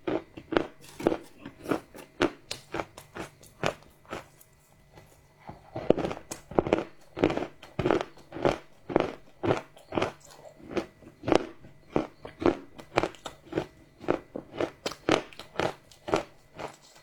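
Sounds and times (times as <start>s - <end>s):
chewing crunchy chocolate: 0.0s - 17.0s.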